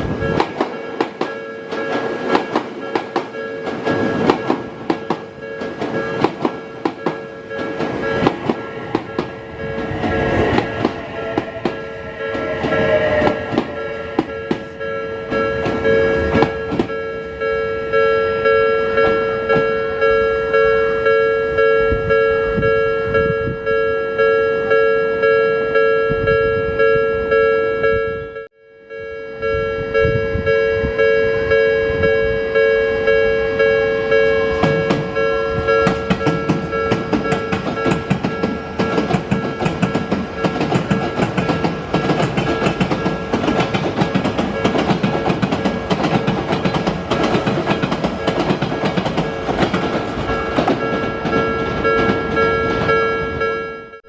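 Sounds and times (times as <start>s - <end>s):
train wheels clattering over rail joints: 0.0s - 17.0s, 34.6s - 53.0s
level-crossing warning bell: 0.0s - 54.0s.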